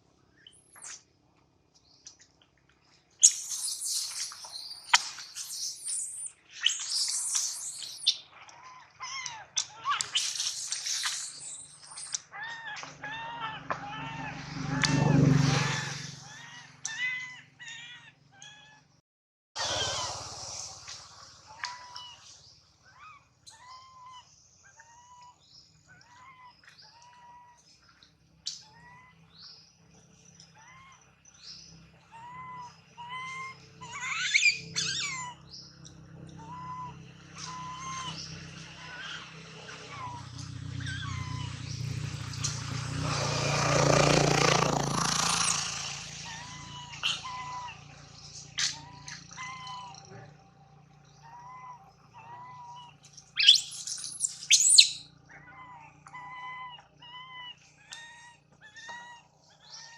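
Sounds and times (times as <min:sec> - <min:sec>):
arched chirping calls: 0:03.2 - 0:08.3, 0:08.9 - 0:12.6, 0:30.6 - 0:43.1, 0:45.2 - 0:59.9
shrill squawking bursts: 0:33.0 - 0:35.4, 0:45.2 - 0:47.8, 0:52.3 - 0:55.1.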